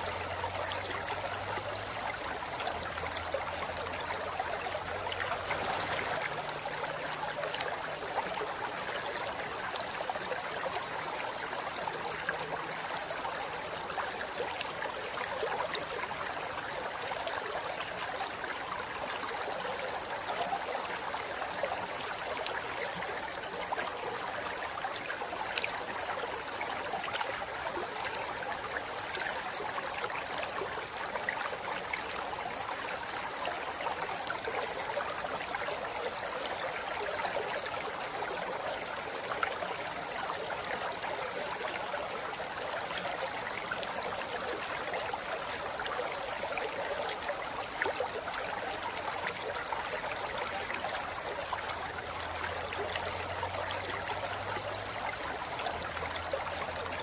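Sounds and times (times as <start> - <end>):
river rushing over rocks: 4.8 - 6.7.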